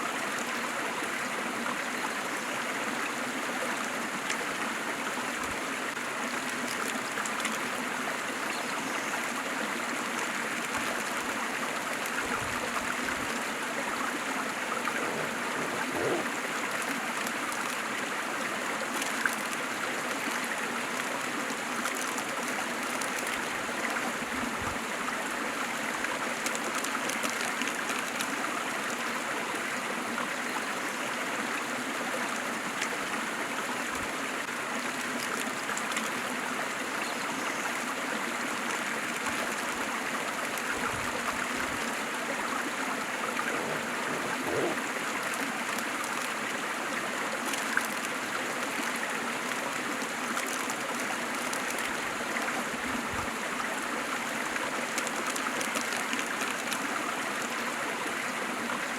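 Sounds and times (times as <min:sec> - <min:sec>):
waterfall rushing: 0:42.0 - 0:45.0.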